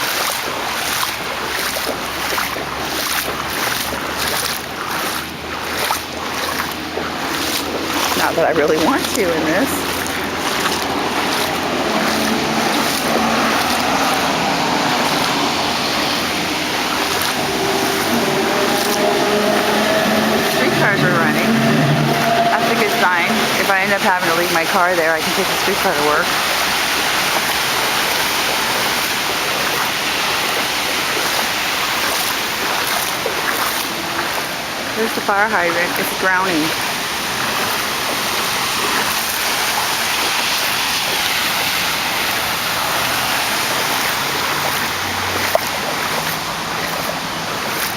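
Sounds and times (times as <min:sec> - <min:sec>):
floodwater sloshing around legs: 0:00.0 - 0:47.9
water hissing: 0:00.0 - 0:47.9.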